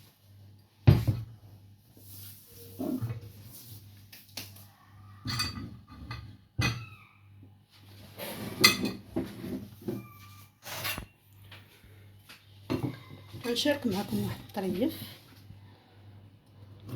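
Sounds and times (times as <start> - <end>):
plates and cutlery clinking: 5.2 - 6.9, 8.3 - 11.2.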